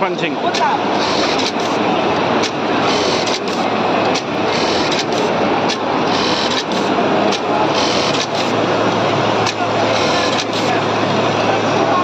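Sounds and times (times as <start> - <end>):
sewing machine clattering: 0.4 - 1.8.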